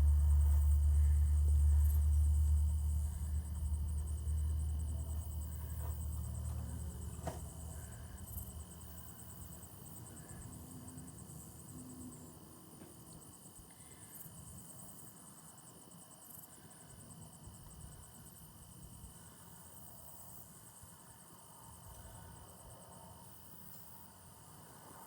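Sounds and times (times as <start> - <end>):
low rumble: 0.0 - 8.6
crickets chirping: 0.0 - 25.0.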